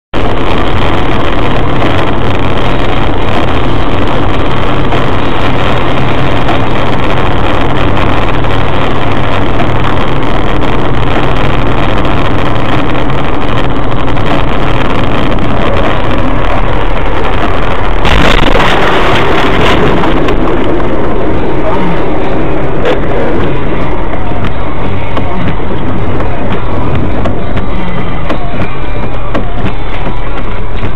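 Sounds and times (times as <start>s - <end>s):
car engine: 0.0s - 30.9s
road noise: 0.0s - 30.9s
low hum: 0.2s - 30.9s.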